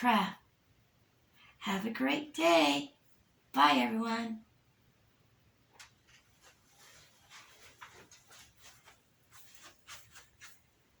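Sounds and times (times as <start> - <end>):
faint scratching and rustling: 5.8 - 11.0.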